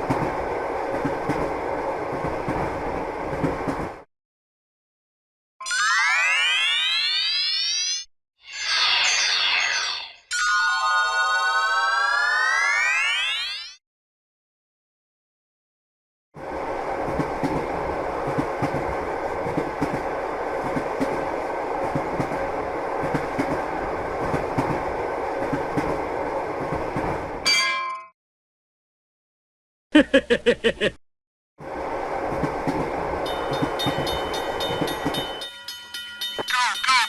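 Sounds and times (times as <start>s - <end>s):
train rumble with rail clatter: 0.0s - 4.1s, 16.4s - 27.5s, 31.6s - 37.0s.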